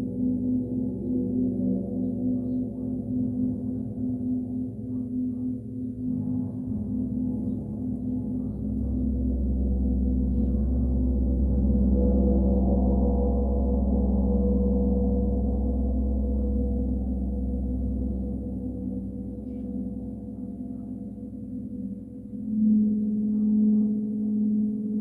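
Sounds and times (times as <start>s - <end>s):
gong ringing with deep hum: 0.0s - 25.0s.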